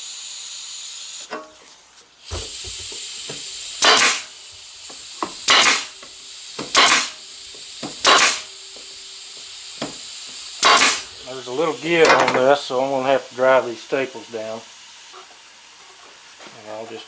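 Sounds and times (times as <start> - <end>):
steady air hiss: 0.0 - 17.0
pneumatic staple gun firing: 2.2 - 11.2.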